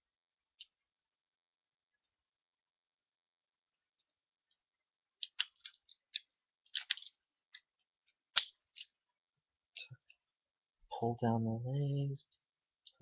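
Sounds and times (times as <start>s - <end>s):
plastic toy parts clicking: 5.2s - 9.0s.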